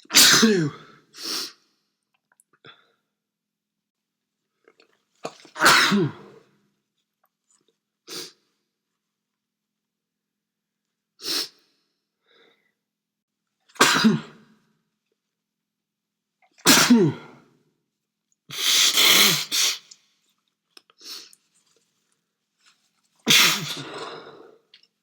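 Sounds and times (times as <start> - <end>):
man sneezing: 0.0 - 1.5, 5.6 - 6.3, 13.8 - 14.4, 16.6 - 17.4, 18.5 - 19.9, 23.3 - 24.4
faint breath: 12.2 - 12.8.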